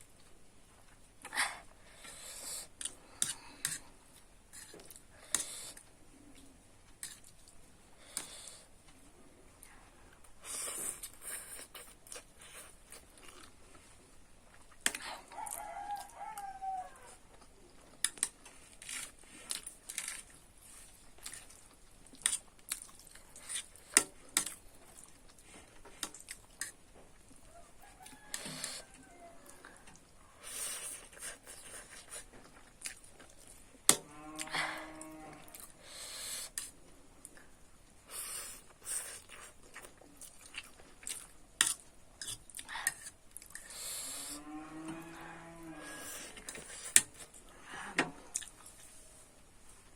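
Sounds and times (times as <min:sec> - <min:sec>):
rooster crowing: 0:15.2 - 0:17.2, 0:27.4 - 0:29.9, 0:44.4 - 0:46.1
chewing and slurping: 0:38.1 - 0:44.4.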